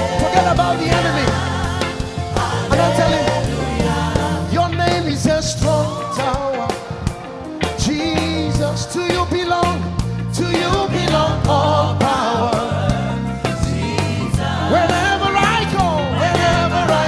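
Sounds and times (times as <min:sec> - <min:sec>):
gospel band playing: 0:00.0 - 0:17.0
voices singing: 0:00.0 - 0:17.0.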